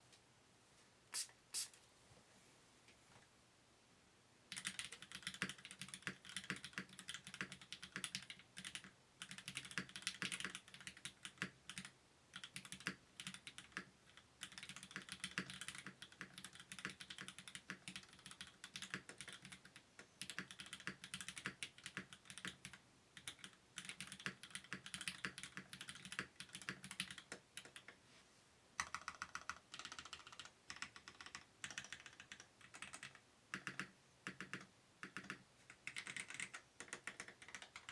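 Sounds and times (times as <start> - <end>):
mechanical keyboard typing: 4.5 - 28.0, 28.8 - 37.9.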